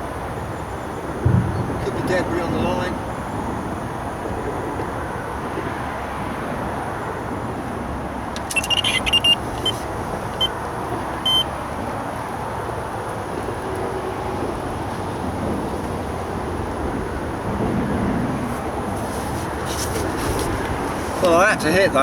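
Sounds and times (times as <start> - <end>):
road traffic noise: 0.0 - 22.0
bite alarm short high beeps: 8.5 - 10.5, 11.2 - 11.5.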